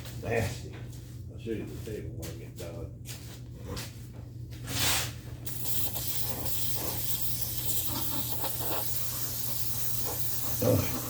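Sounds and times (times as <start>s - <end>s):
aerosol spray hissing: 5.4s - 11.0s.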